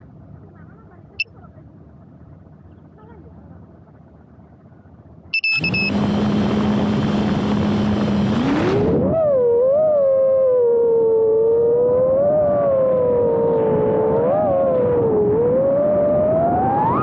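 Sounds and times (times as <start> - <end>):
short beep: 5.3 - 6.0
quadcopter motors whining: 5.4 - 17.0.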